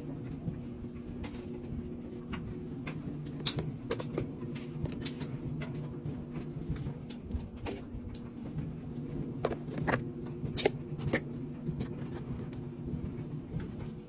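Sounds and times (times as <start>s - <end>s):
washing machine motor hum: 0.0s - 14.0s.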